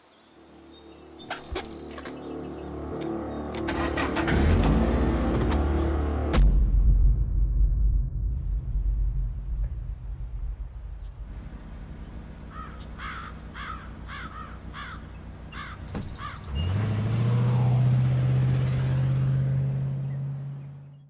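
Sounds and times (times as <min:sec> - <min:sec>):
bird cawing: 0:12.5 - 0:16.6.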